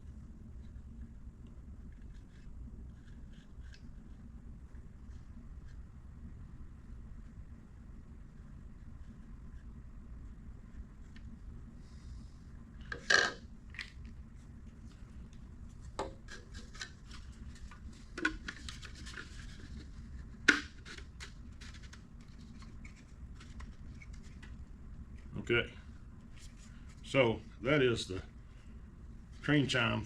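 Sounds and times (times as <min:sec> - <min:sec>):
plastic parts clicking and rubbing: 0:16.2 - 0:24.6.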